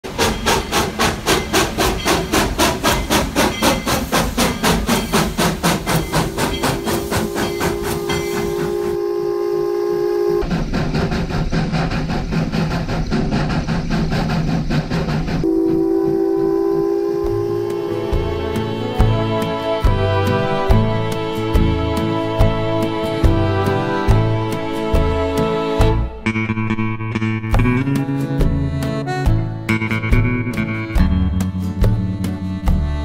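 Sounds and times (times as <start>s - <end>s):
steam locomotive exhaust chuffing: 0.0s - 33.0s
steam whistle: 5.8s - 10.5s, 15.4s - 24.3s.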